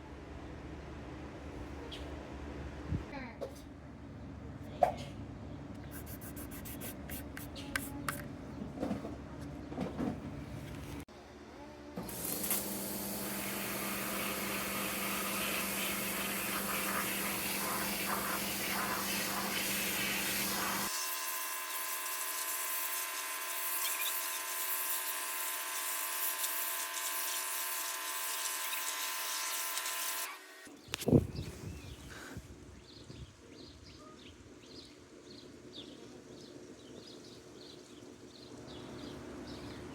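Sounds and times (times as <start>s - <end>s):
water spray hissing: 5.9s - 8.2s, 12.1s - 21.0s
pressure washer motor whine: 12.0s - 22.2s.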